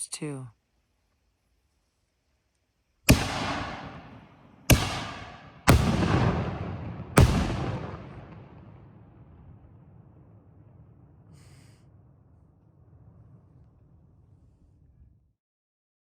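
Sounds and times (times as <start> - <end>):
firework booms with rolling echo: 3.0 - 15.3.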